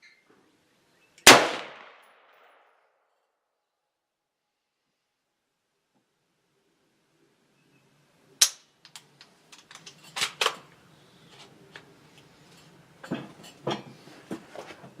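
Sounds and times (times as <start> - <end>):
rifle shot: 1.2 - 2.6.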